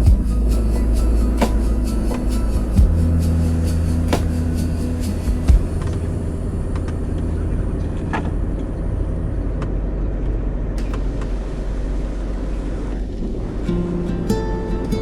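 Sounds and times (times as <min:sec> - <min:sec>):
engine and road rumble: 0:00.0 - 0:15.0
sharp thump: 0:04.1 - 0:04.6.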